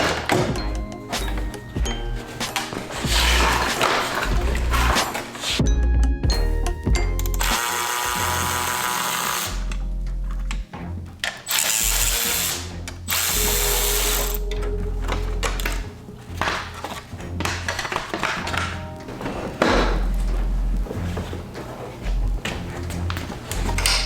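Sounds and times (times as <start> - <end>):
background music: 0.0 - 24.0
power tool bursts: 7.4 - 9.8, 11.4 - 14.4.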